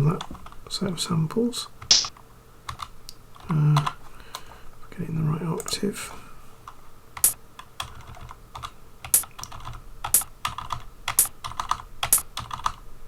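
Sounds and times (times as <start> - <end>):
keyboard keys clicking: 7.2 - 12.8.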